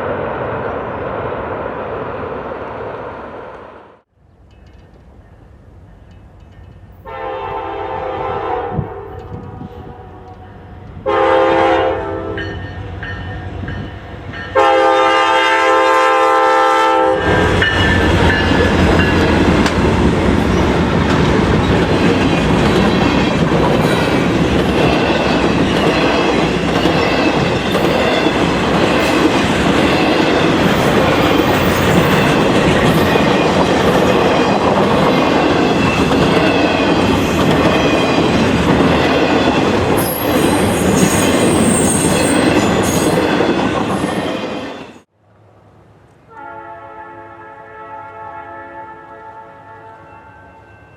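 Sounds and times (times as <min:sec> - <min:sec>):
train passing close: 0:00.0 - 0:50.9
wheels clicking over rail joints: 0:04.3 - 0:07.0
locomotive air horn blasts: 0:07.0 - 0:10.4, 0:11.0 - 0:12.5, 0:14.6 - 0:17.6, 0:46.3 - 0:50.5.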